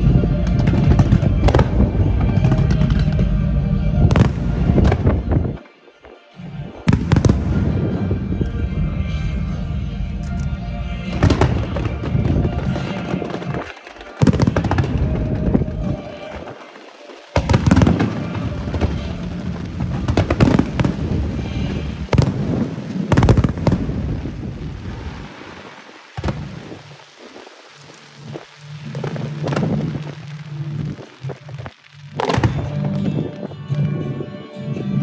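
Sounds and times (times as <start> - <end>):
fireworks crackles: 4.0 - 8.8, 10.0 - 33.9
distant fireworks booms: 4.1 - 5.6, 6.9 - 8.7, 14.2 - 16.6, 17.3 - 32.8.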